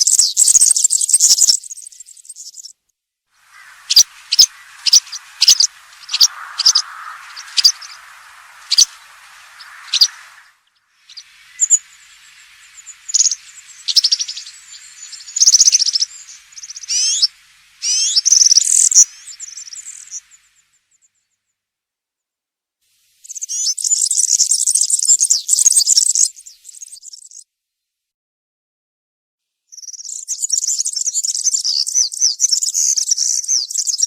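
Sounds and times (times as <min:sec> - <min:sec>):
background hiss: 0:03.4 - 0:20.9.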